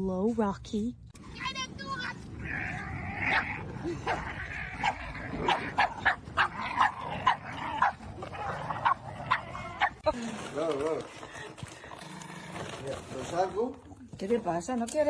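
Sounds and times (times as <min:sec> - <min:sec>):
dog barking high-pitched: 0:04.8 - 0:10.0.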